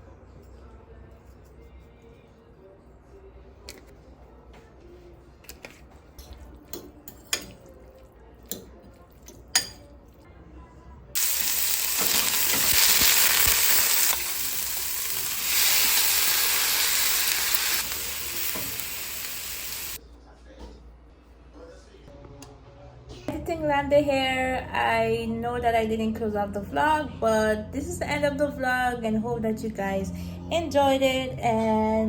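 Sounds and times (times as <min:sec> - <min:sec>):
food sizzling in a hot pan: 0:11.2 - 0:20.0.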